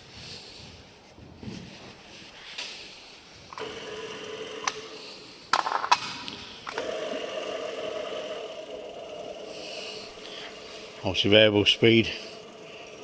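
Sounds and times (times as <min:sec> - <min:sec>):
motor humming: 0:03.5 - 0:05.3, 0:06.6 - 0:13.0
sharp clicks and knocks: 0:05.5 - 0:06.9.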